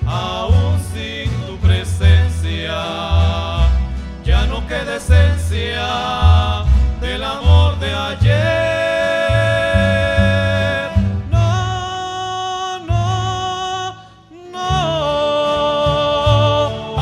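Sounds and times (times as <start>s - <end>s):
group singing in harmony: 0.0s - 11.7s
pulsing bass: 0.0s - 12.0s
guitars: 0.0s - 17.0s.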